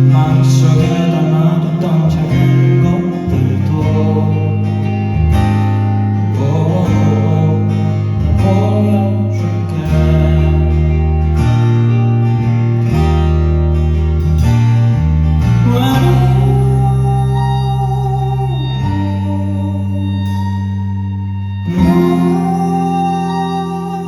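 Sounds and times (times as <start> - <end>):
person singing: 0.0 - 5.2, 6.2 - 11.7, 15.5 - 24.0
bass line: 0.0 - 24.0
strummed guitars: 0.0 - 24.0.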